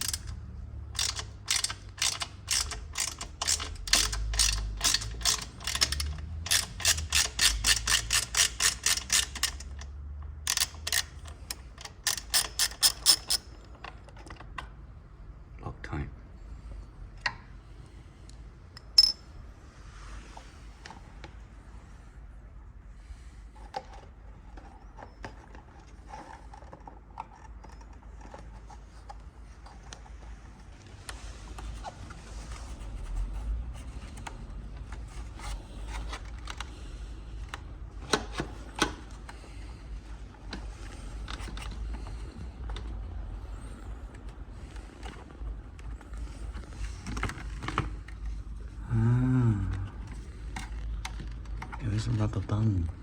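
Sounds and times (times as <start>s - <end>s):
hand tools clinking and scraping: 18.8s - 19.2s
sharp ringing metallic clink: 19.0s - 19.2s.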